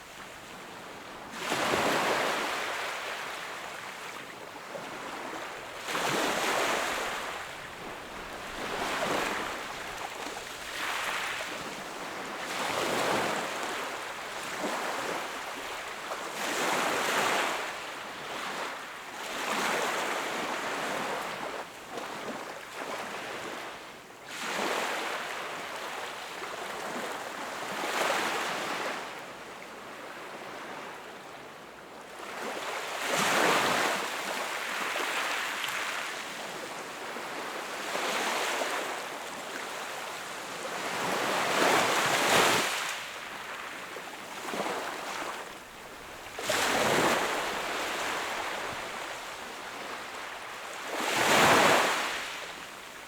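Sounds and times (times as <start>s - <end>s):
ocean waves breaking on shore: 1.2s - 21.4s, 32.3s - 53.0s.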